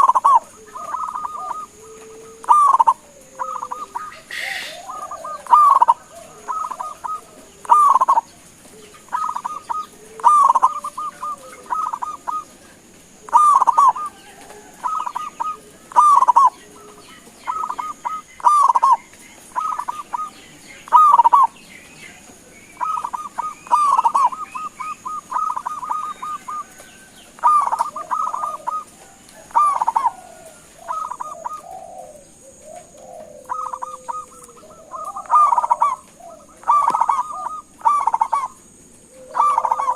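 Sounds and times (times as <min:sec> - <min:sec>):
dove cooing: 0:00.0 - 0:39.9.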